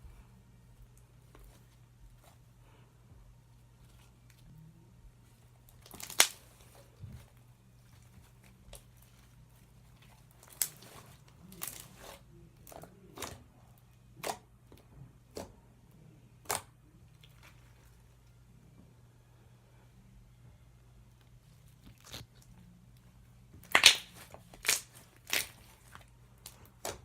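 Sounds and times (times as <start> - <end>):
faint low hum: 0.0 - 27.0
slime popping and crackling: 5.7 - 6.8, 10.3 - 13.4, 21.8 - 22.5, 23.6 - 27.0.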